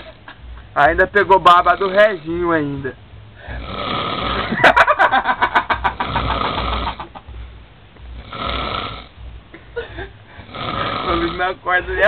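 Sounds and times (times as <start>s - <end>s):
man snoring with a rattle: 3.4s - 4.7s, 5.9s - 7.1s, 8.2s - 9.1s, 10.4s - 11.6s.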